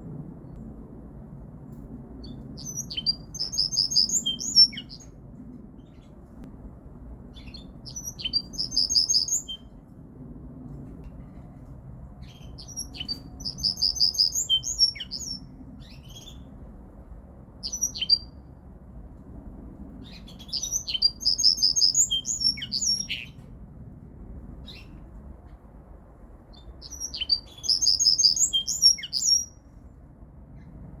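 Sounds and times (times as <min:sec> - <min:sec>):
bird twittering song: 0:02.2 - 0:05.2, 0:07.4 - 0:09.7, 0:12.2 - 0:16.5, 0:17.6 - 0:18.4, 0:20.0 - 0:23.4, 0:26.5 - 0:29.6.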